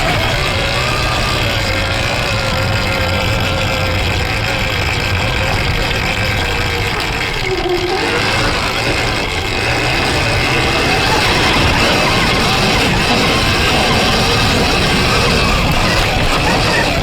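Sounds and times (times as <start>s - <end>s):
electric motor whining: 0.0s - 17.0s
low rumble of ride: 0.0s - 17.0s.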